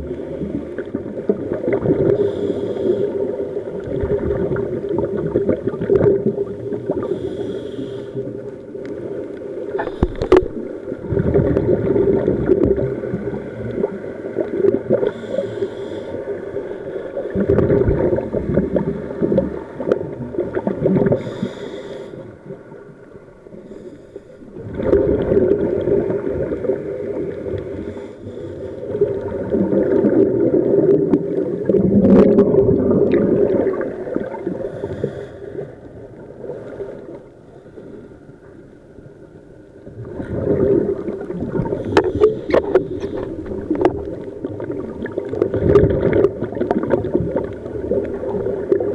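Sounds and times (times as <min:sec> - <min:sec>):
exhaled bubbles gurgling: 0:00.0 - 0:37.4, 0:39.8 - 0:48.9
hissing regulator inhalations: 0:02.2 - 0:03.3, 0:06.9 - 0:08.4, 0:15.0 - 0:17.2, 0:21.1 - 0:22.4, 0:34.6 - 0:35.8, 0:41.7 - 0:43.7.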